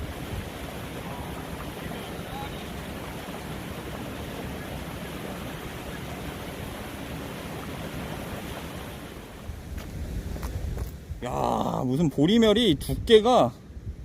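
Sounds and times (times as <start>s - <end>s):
sea waves at shore: 0.0s - 11.2s
wind on microphone: 0.0s - 11.2s, 12.6s - 14.0s.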